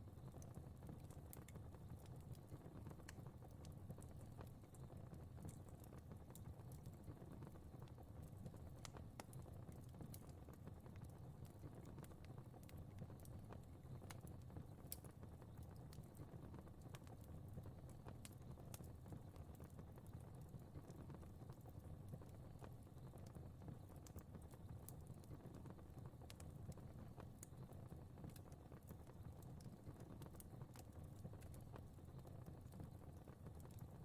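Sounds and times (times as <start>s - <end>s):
fire crackling and popping: 0.0s - 34.0s
low rumble of flames: 0.0s - 34.0s.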